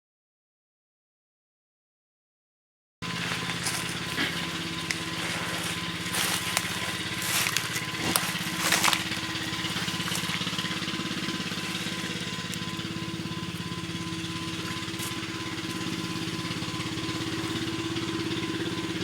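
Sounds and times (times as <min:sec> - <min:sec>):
crackling rustles: 0:03.0 - 0:12.9
toads trilling chorus: 0:03.0 - 0:19.0.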